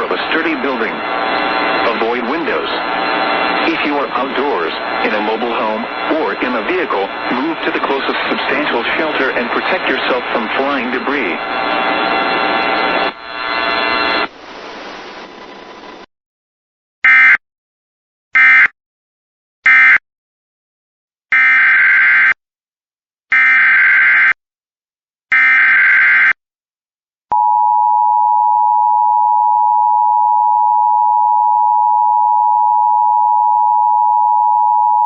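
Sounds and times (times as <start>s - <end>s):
digital data bursts: 0.0s - 14.3s.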